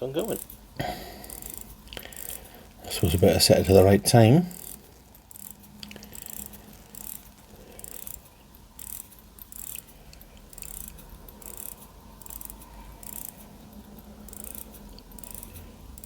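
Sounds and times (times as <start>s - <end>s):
watch winding ratchet clicking: 0.0s - 16.0s.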